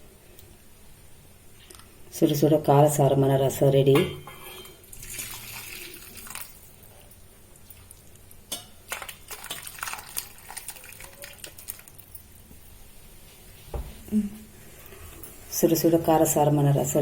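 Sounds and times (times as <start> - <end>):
utensils clinking against pot: 4.0 - 4.8, 8.5 - 8.8.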